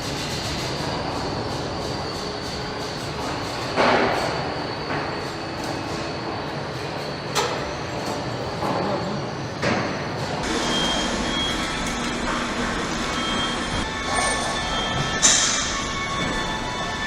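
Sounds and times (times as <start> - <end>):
machinery hum and hiss: 0.0 - 17.0
deeper machine hum: 10.4 - 17.0
metallic clanks: 10.4 - 17.0
short high tones: 10.4 - 17.0.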